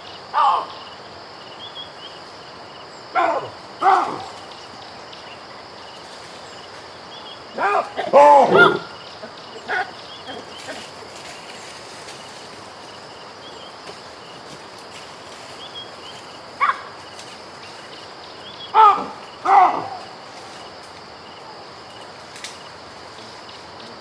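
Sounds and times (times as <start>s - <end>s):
insect drone: 0.0s - 24.0s
baboon calls: 0.3s - 0.8s, 3.1s - 4.5s, 7.5s - 11.1s, 16.6s - 16.9s, 18.7s - 20.1s.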